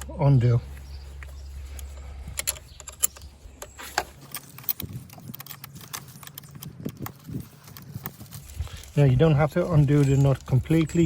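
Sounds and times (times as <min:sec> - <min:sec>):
spanner clicking on metal: 0:01.8 - 0:07.9.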